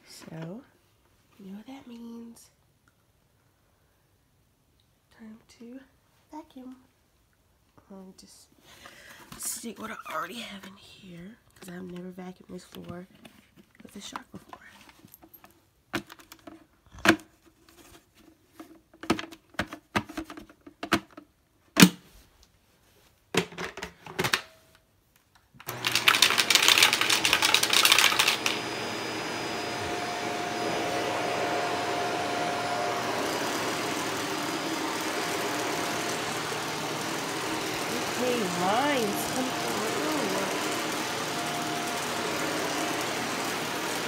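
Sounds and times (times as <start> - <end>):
vacuum cleaner running on carpet: 25.7 - 44.0.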